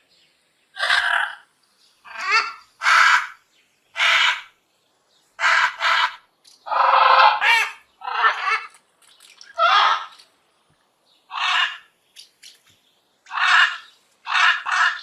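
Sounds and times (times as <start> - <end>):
parrot squawking: 0.8 - 1.4, 2.1 - 3.4, 4.0 - 4.5, 5.4 - 8.8, 9.6 - 10.2, 11.3 - 11.9, 13.3 - 15.0.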